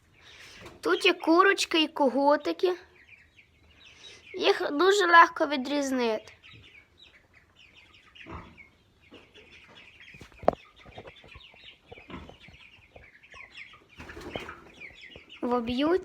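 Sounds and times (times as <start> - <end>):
chickens clucking: 0.0 - 16.0.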